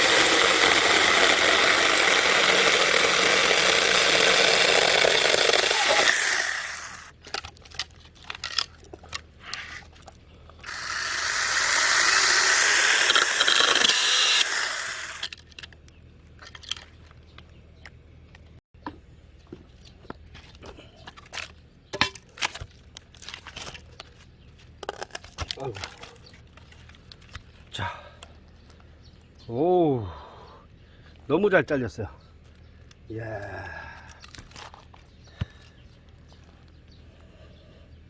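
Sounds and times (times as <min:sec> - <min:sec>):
chainsaw cutting log: 0:00.0 - 0:07.1, 0:10.6 - 0:15.4.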